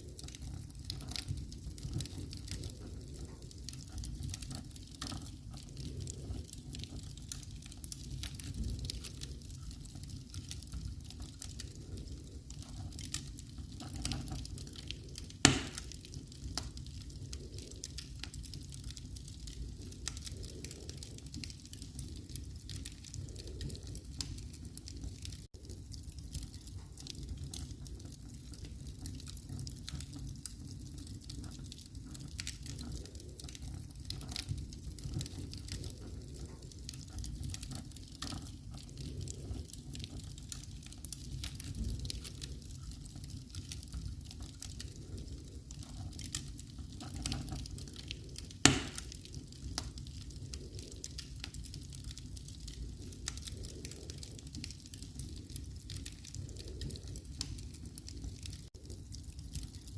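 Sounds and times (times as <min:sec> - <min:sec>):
wood fire crackling: 0:00.0 - 0:59.9
loud sharp fire pop: 0:15.4 - 0:15.8, 0:48.6 - 0:49.0.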